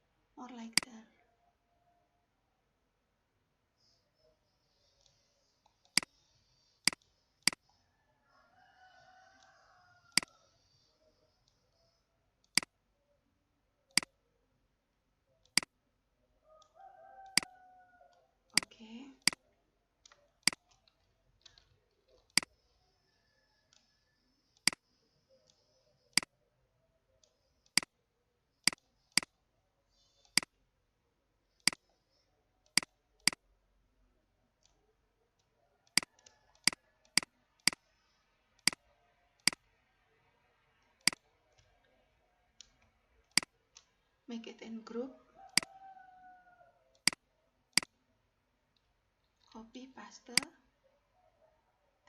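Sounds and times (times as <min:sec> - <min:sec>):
computer mouse clicks: 0:04.7 - 0:07.8, 0:09.4 - 0:10.8, 0:12.4 - 0:12.8, 0:13.9 - 0:14.2, 0:15.4 - 0:15.7, 0:16.6 - 0:22.8, 0:23.5 - 0:26.4, 0:27.2 - 0:28.0, 0:28.6 - 0:29.4, 0:30.0 - 0:30.6, 0:31.6 - 0:32.0, 0:32.6 - 0:33.4, 0:34.6 - 0:37.9, 0:38.6 - 0:39.7, 0:40.8 - 0:42.0, 0:42.6 - 0:44.0, 0:45.4 - 0:45.8, 0:46.9 - 0:48.0, 0:50.2 - 0:50.6.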